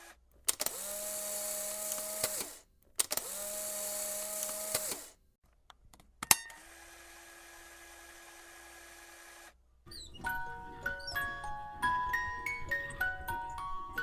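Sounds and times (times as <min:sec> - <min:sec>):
small electric motor whirring: 0:00.0 - 0:05.2, 0:06.5 - 0:09.6
switch click: 0:01.6 - 0:05.1
light clicks: 0:01.7 - 0:05.1.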